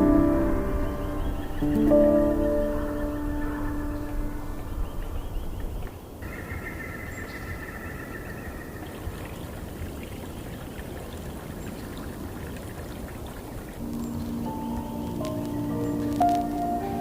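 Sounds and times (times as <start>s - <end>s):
water trickling: 7.7s - 17.0s.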